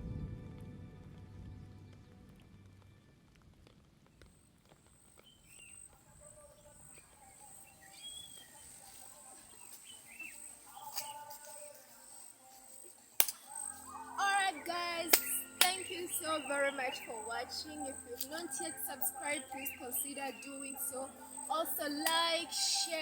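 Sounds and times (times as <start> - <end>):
light music: 0.0 - 3.3, 7.5 - 23.0
bird chirps: 6.6 - 23.0
sharp click: 13.2 - 13.5.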